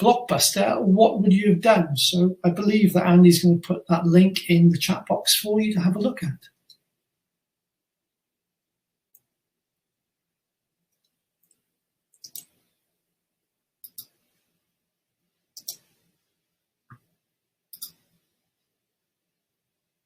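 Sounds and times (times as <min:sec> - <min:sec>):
computer mouse clicks: 0:10.9 - 0:12.7, 0:13.8 - 0:14.4, 0:15.6 - 0:16.1, 0:16.9 - 0:18.2.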